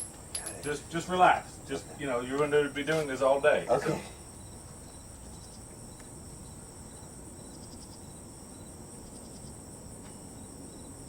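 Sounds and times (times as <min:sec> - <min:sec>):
insects chirping: 0:00.0 - 0:11.0.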